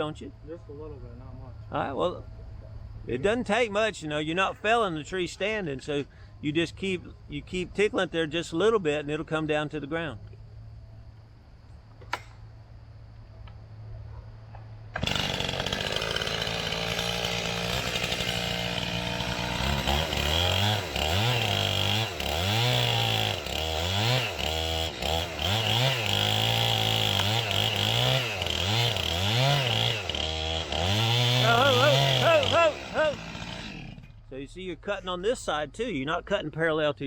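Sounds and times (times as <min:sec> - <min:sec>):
chainsaw cutting wood: 0:14.9 - 0:34.3.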